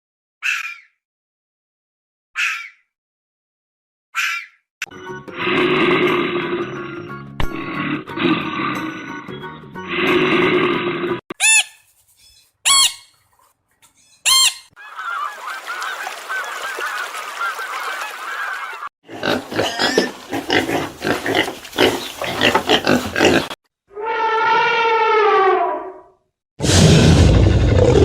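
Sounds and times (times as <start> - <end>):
geese honking: 14.3 - 18.9.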